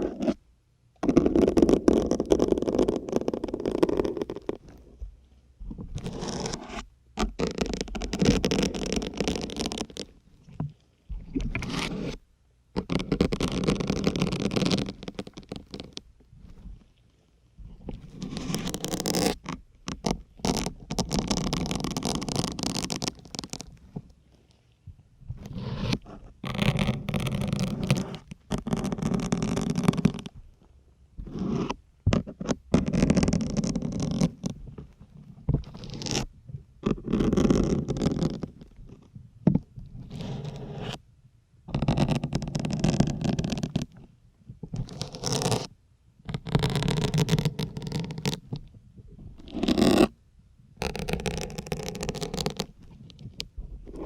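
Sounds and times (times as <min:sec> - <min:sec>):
syringe pushed into foam sponge: 0:11.2 - 0:12.2, 0:17.8 - 0:19.4, 0:25.3 - 0:30.4
needles crackling into sponge: 0:17.8 - 0:24.1.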